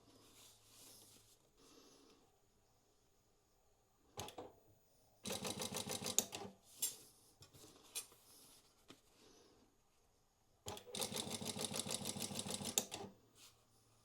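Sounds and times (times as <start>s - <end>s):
sewing machine clicks: 5.3s - 6.5s, 10.7s - 13.1s
sewing machine stitching: 10.7s - 13.1s.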